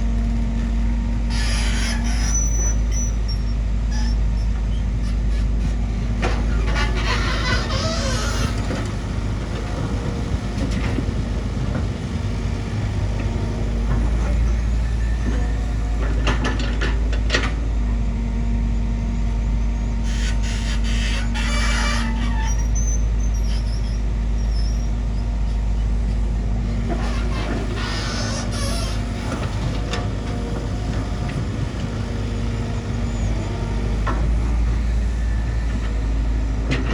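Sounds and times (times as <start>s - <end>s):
bulldozer diesel engine rumbling: 0.0s - 36.9s.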